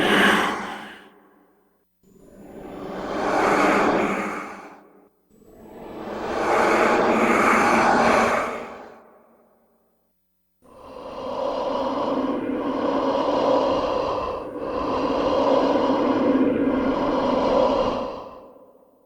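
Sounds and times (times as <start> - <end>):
ghostly breathing: 0.0 - 10.0, 10.6 - 19.0.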